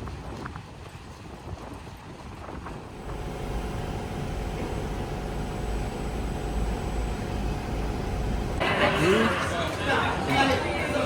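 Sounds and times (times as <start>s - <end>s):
vehicle engine rumble: 2.9s - 8.7s
faint steady hum: 3.0s - 8.7s.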